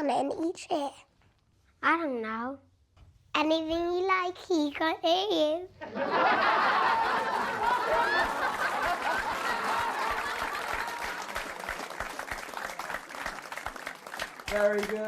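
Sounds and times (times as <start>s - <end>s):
audience laughter: 5.8s - 11.4s
audience applause: 6.1s - 15.0s.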